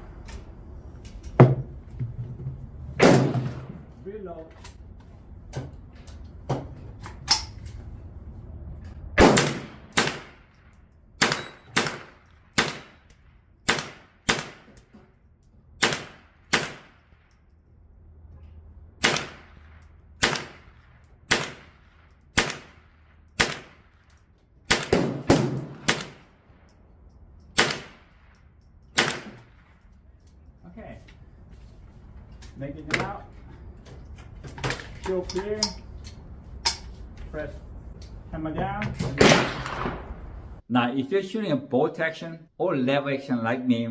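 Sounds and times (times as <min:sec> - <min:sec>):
rifle shots: 0:03.0 - 0:03.8, 0:09.2 - 0:10.6, 0:11.2 - 0:14.8, 0:15.8 - 0:17.3, 0:19.0 - 0:24.1, 0:24.7 - 0:26.5, 0:27.6 - 0:28.3, 0:29.0 - 0:29.7, 0:39.2 - 0:40.2
steel targets ringing: 0:11.3 - 0:11.8.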